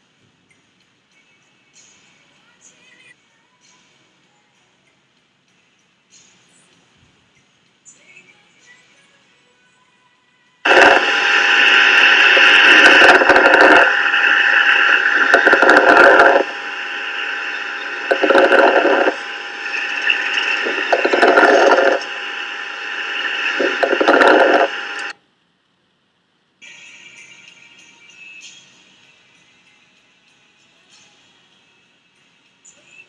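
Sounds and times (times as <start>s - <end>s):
steady tones: 10.7s - 25.1s.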